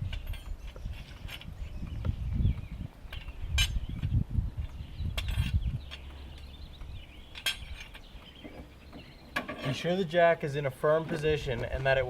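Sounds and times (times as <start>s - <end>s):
low rumbling: 0.0s - 9.4s
car jack metal clinks: 7.2s - 8.6s.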